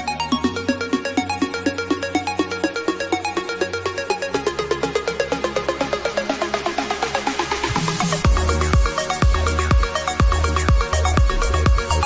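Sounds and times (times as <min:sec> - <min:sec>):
electronic dance music: 0:00.0 - 0:12.0
deep kick drum: 0:08.2 - 0:12.0.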